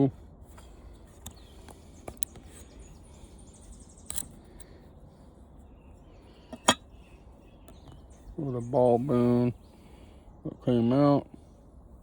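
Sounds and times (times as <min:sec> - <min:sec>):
fan parts clicking: 0:06.5 - 0:06.8.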